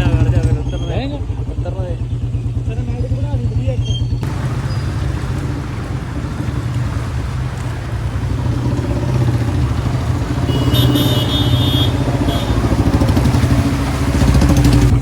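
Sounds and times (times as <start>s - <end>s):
motorcycle engine thumping: 4.2s - 15.0s.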